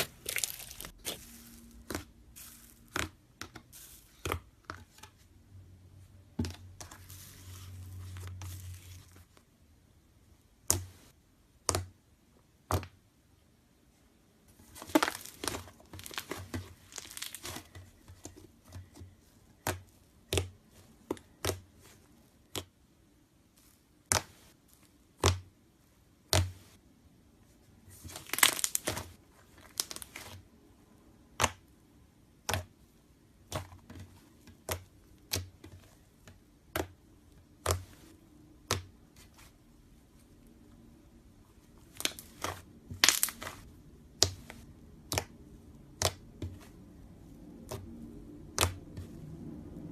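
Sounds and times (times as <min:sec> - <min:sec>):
slime popping and crackling: 0:00.0 - 0:03.2, 0:14.8 - 0:17.7, 0:28.1 - 0:30.3, 0:41.8 - 0:46.3.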